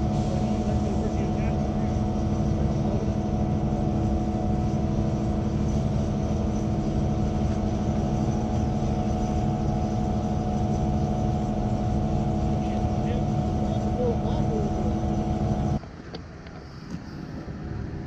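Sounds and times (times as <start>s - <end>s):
heavy engine droning: 0.0s - 18.0s.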